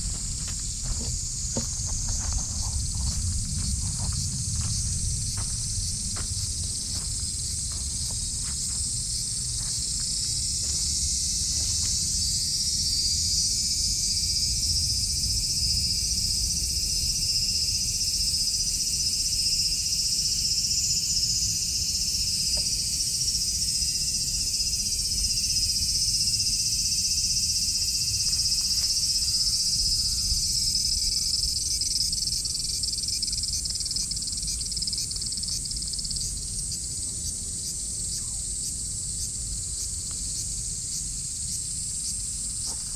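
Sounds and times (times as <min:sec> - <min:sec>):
low rumble: 0:00.0 - 0:08.0
cicadas droning: 0:00.0 - 0:42.9.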